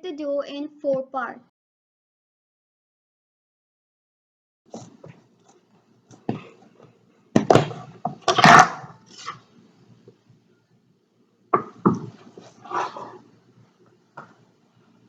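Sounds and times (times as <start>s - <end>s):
dough thudding on work surface: 7.4s - 8.8s, 11.5s - 12.2s.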